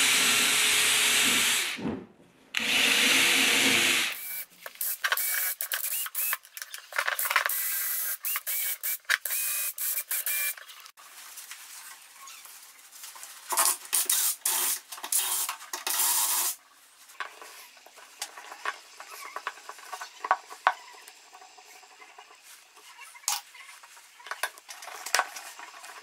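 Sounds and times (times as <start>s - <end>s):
short bursts of noise: 7.2s - 10.6s
power tool whining: 7.5s - 10.6s.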